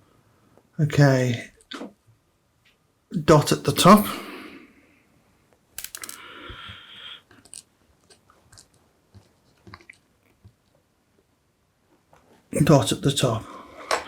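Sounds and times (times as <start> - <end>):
small parts clicking: 5.8 - 6.3.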